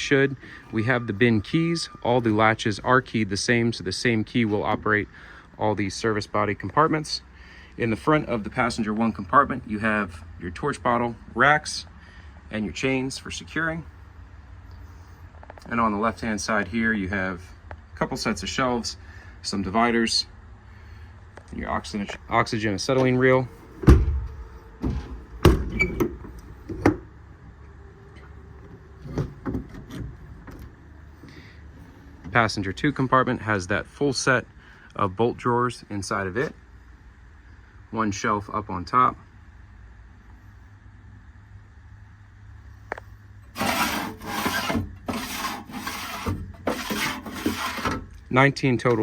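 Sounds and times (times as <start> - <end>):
metal doors and latches clunking: 22.9 - 27.1
metal drawers sliding on runners: 43.5 - 48.1.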